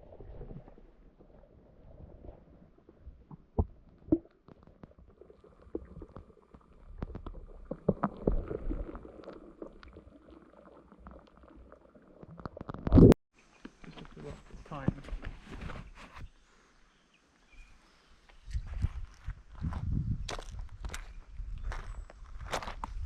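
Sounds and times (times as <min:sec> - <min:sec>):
underwater clicks and knocks: 0:03.2 - 0:10.0, 0:12.2 - 0:13.8.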